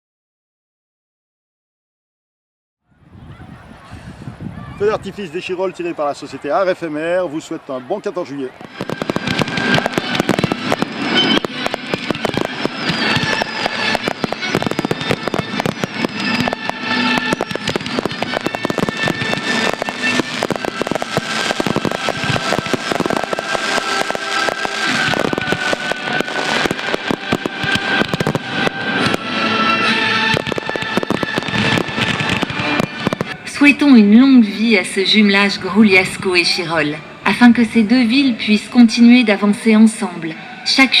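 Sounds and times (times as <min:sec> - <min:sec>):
firework bursts and crackles: 0:08.5 - 0:33.8
music with sustained notes: 0:08.6 - 0:41.0.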